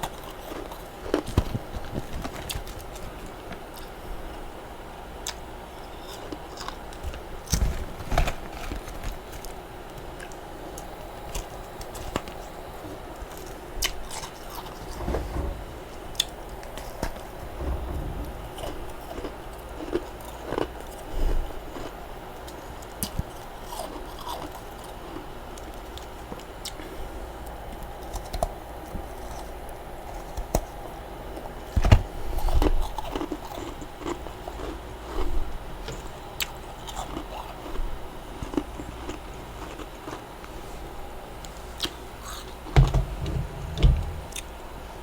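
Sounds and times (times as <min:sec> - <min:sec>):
frost being chewed with crunches: 0:00.0 - 0:04.0, 0:05.2 - 0:14.8, 0:18.6 - 0:26.9, 0:32.4 - 0:40.8.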